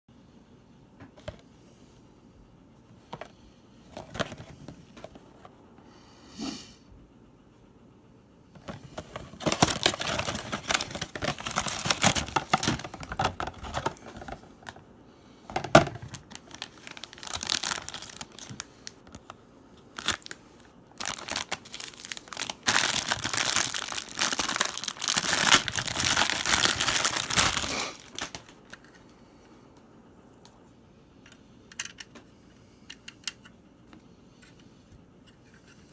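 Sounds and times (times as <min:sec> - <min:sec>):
packaging crinkling and tearing: 0:08.6 - 0:14.8, 0:15.7 - 0:28.9.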